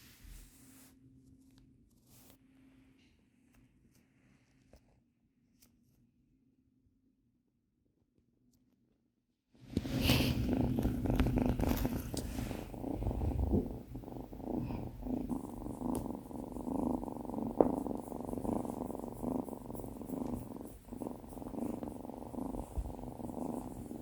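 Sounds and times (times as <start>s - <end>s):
kitten purring: 9.6s - 24.0s.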